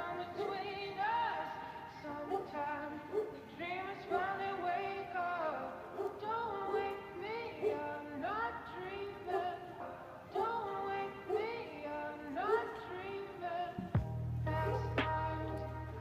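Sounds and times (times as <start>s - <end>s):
deep bass note: 13.8s - 16.0s
sung melody music: 13.8s - 16.0s.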